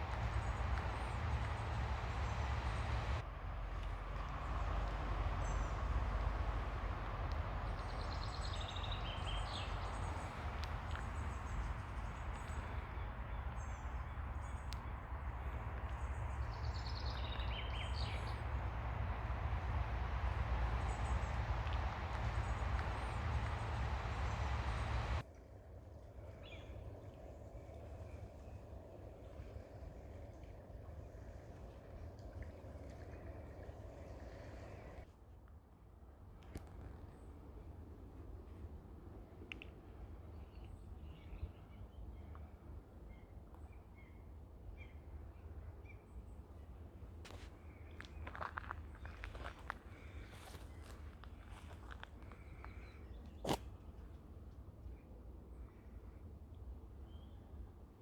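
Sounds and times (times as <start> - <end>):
ocean waves washing on beach: 0.0 - 25.2
bird chirping: 7.7 - 25.2.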